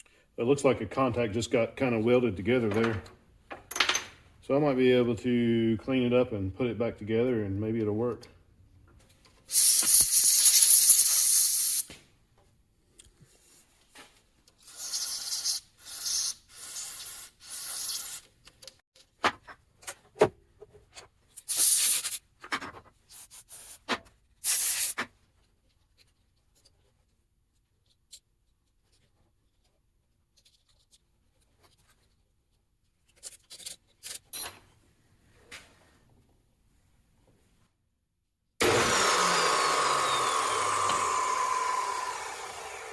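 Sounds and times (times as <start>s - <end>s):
hiss: 9.5s - 11.9s, 14.7s - 18.2s, 21.5s - 22.2s, 24.4s - 25.0s.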